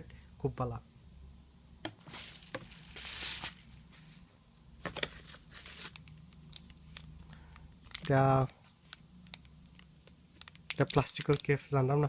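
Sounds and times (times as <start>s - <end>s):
packaging rustle: 2.0s - 3.9s, 4.9s - 11.6s
small clicks and taps: 6.0s - 11.5s.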